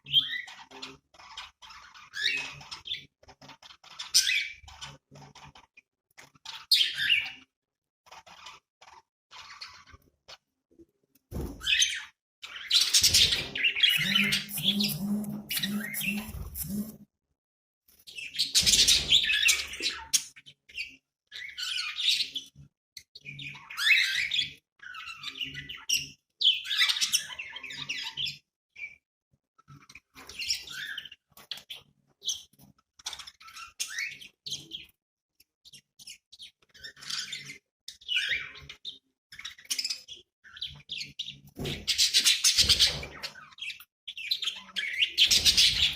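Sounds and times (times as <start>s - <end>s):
budgerigars chirping: 11.7s - 16.9s.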